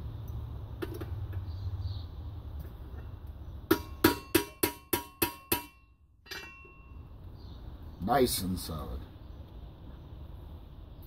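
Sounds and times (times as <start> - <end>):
hammer tapping on metal: 3.7 - 6.8.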